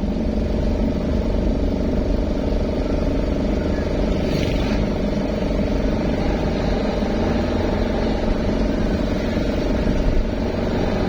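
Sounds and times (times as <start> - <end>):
vehicle engine and road rumble: 0.0 - 11.0.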